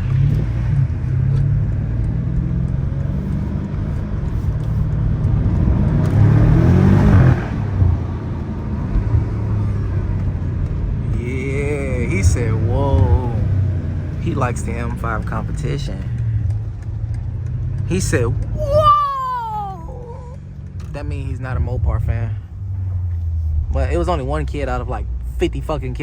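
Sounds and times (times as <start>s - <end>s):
car engine accelerating: 0.0s - 18.6s.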